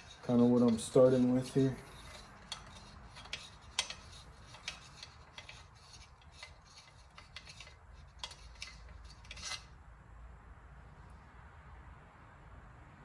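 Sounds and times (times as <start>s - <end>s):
hand tools clicking on metal: 0.0s - 9.7s
metal scrape: 0.0s - 9.8s.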